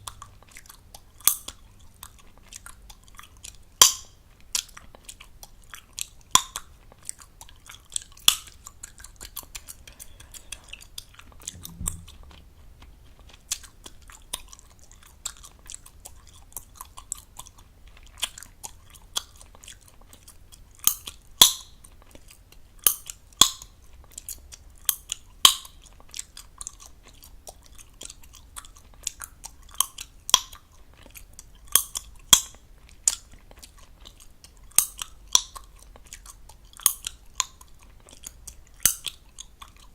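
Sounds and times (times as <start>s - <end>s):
gum chewing smacks: 0.0s - 39.9s
gum pops: 2.2s - 9.8s.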